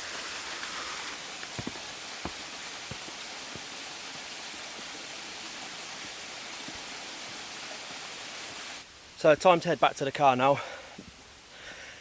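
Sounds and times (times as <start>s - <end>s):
water rushing from small waterfall: 0.0s - 8.9s
footfalls on stairs: 1.5s - 3.7s.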